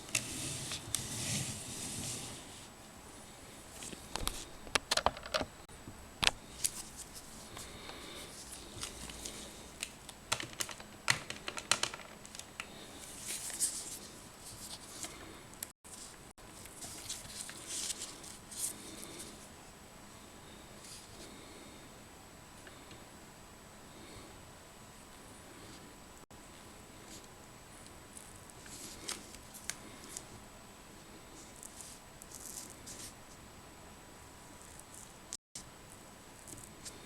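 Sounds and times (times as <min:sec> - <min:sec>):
small hard objects clicking: 0:10.3 - 0:12.6.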